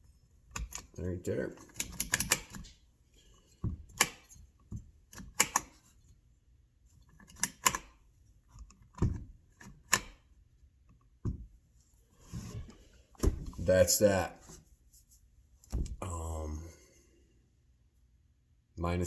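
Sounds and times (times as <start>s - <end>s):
metal tools clicking and knocking: 1.6s - 2.8s.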